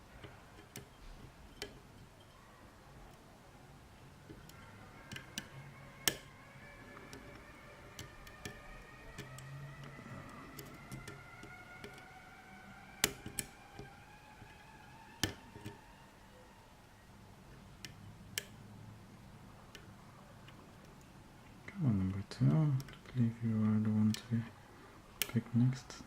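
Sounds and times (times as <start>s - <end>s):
lock pick clicking in padlock: 4.3s - 6.3s, 6.9s - 12.1s, 13.0s - 13.9s.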